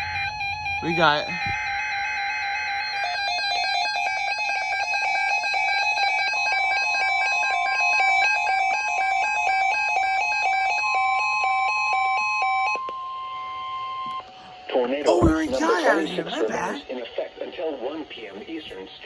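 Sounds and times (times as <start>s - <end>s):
steady high alert tone: 15.1s - 16.8s.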